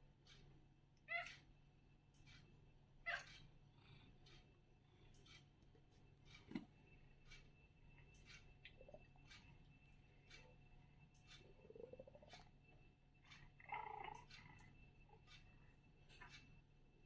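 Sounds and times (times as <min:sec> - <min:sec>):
cat chirping calls: 0:01.1 - 0:01.4, 0:03.0 - 0:03.4.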